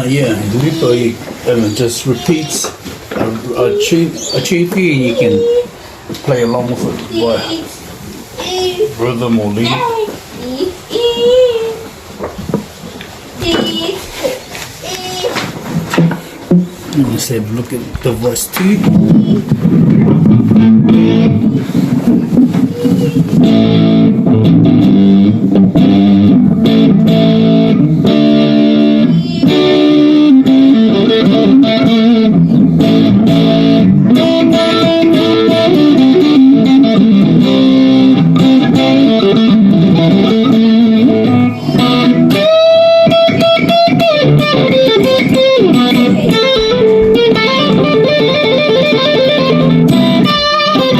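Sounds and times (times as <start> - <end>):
electric guitar through amplifier: 15.5 - 50.9.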